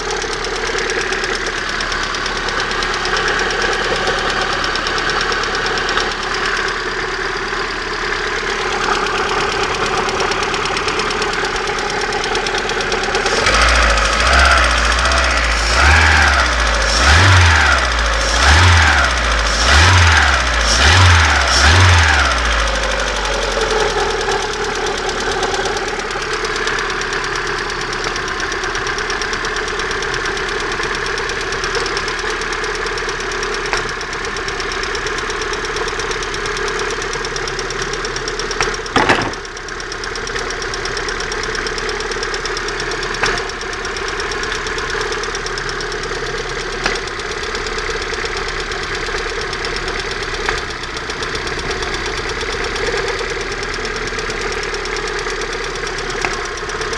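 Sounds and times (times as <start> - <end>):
car engine running: 0.0 - 56.9
fast repeating engine knock: 8.4 - 56.9
loud single thumps: 39.0 - 39.4.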